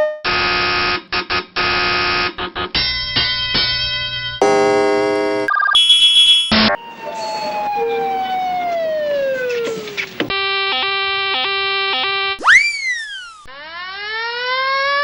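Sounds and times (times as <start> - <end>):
low interrupted alarm tone: 4.4 - 9.4
high pulsing alarm tone: 5.5 - 9.4
siren tone sliding down: 5.7 - 10.0, 12.4 - 15.0.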